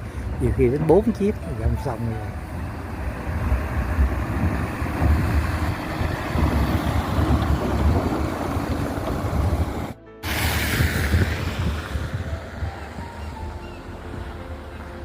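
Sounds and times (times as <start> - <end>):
road vehicles passing: 0.0 - 15.0
wind buffeting microphone: 2.4 - 15.0.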